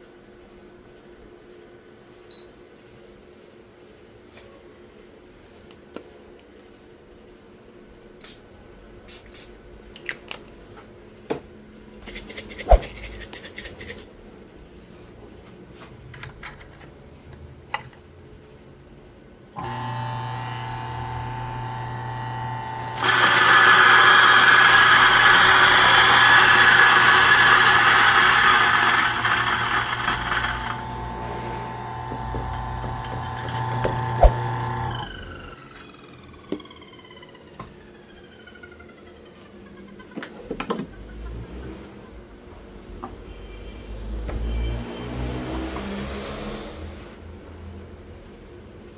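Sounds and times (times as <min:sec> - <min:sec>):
coffee beans being ground: 0:12.0 - 0:14.1, 0:22.7 - 0:35.0
coffee grinder motor humming: 0:19.6 - 0:37.1.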